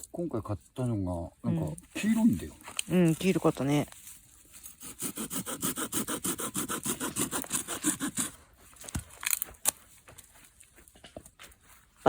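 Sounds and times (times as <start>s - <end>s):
hand saw cutting wood: 4.7s - 8.4s.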